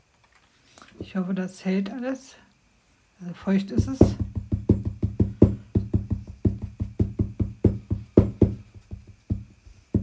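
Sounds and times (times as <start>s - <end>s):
dabber tapping on paper: 3.7s - 10.0s.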